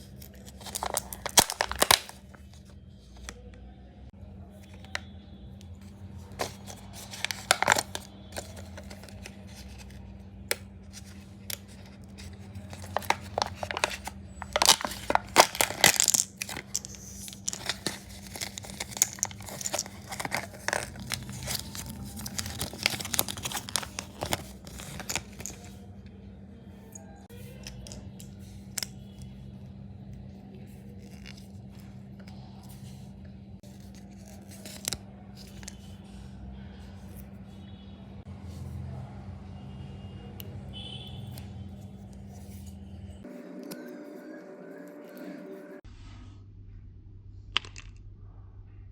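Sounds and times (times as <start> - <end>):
foil wrapper tearing and crinkling: 0.0 - 2.5, 6.4 - 9.8, 11.0 - 25.7
steady low hum: 41.4 - 48.9.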